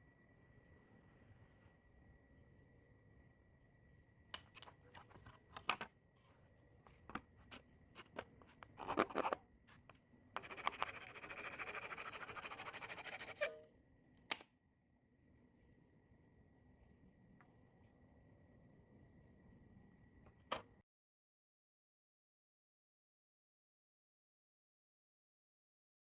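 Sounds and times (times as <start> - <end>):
rapid scratching: 10.4 - 13.5.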